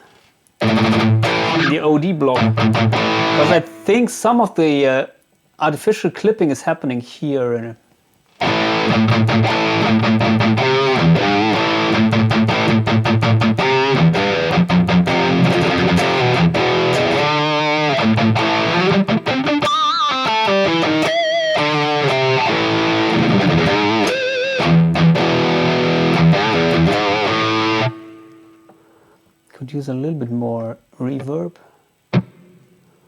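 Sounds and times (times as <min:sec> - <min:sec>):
distorted electric guitar: 0:00.6 - 0:04.0, 0:08.4 - 0:28.9, 0:32.1 - 0:33.0.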